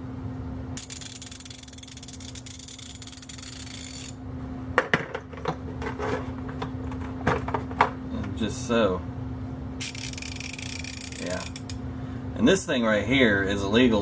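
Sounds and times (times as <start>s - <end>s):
ratchet fast clicking buzz: 0.8s - 4.2s, 9.8s - 11.8s.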